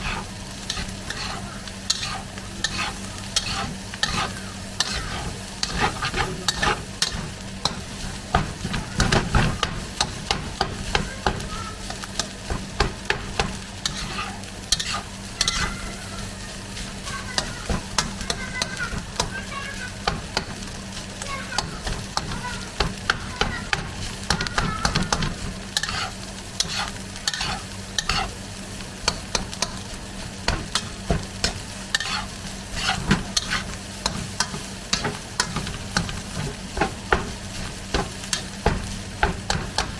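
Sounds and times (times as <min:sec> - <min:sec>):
spatula scraping and tapping pan: 0:00.0 - 0:28.4, 0:29.0 - 0:39.9
rice sizzling in a hot pan: 0:00.0 - 0:39.9.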